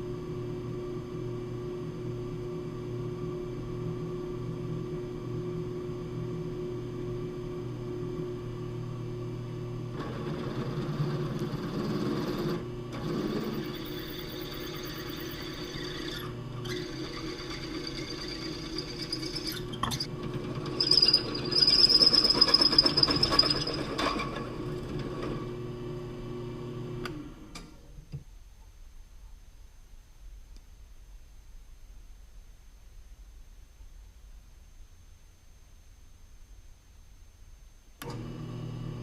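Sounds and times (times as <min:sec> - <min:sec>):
lathe cutting metal: 0:10.0 - 0:24.6
high machine whine: 0:10.0 - 0:24.8
machine winding down: 0:10.0 - 0:25.5.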